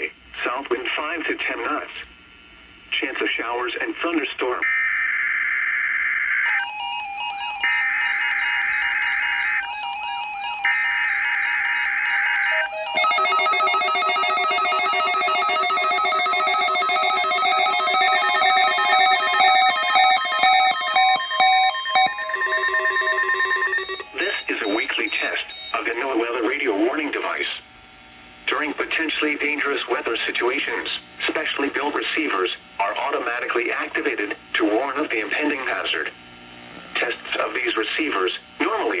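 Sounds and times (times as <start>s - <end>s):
beeping electronic tone sequence: 7.0s - 26.3s
screeching digital data bursts: 12.9s - 26.2s.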